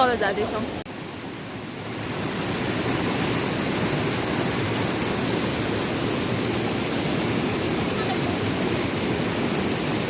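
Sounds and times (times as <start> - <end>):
stream rushing over rocks: 0.0 - 10.0.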